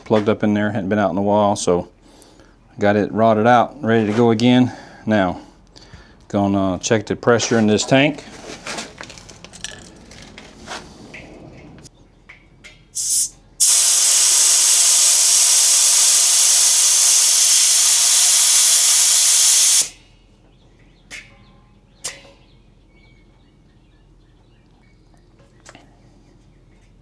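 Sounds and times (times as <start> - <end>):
compressed air hissing: 13.0 - 20.0.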